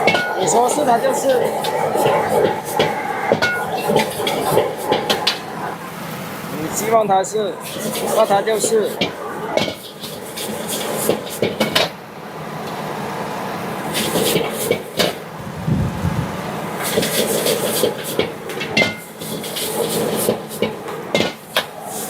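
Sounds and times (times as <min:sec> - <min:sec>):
steady hiss: 0:00.0 - 0:22.0.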